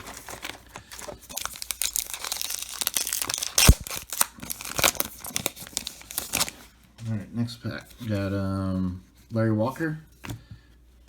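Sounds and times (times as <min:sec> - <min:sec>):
wrapper tearing and crinkling: 0:00.0 - 0:06.6.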